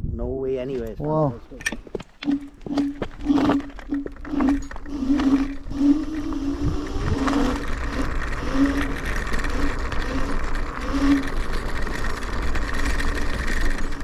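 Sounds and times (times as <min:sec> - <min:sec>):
wind rumble on microphone: 0:00.0 - 0:01.0, 0:04.4 - 0:11.0
electric scooter motor whine: 0:02.2 - 0:14.0
short low tonal blips: 0:02.2 - 0:14.0.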